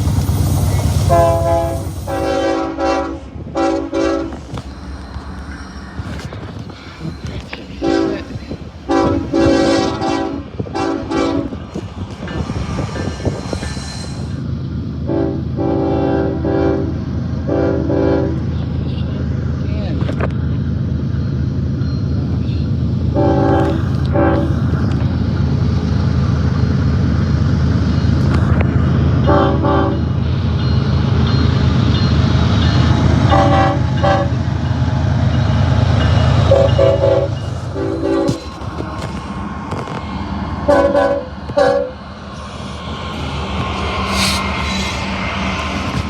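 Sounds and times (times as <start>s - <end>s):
moving train rumble: 0.0s - 46.0s
train horn blasts: 1.0s - 4.6s, 7.8s - 11.8s, 15.0s - 18.5s, 23.1s - 24.7s, 29.2s - 30.1s, 33.3s - 34.4s, 36.4s - 38.6s, 40.6s - 42.0s.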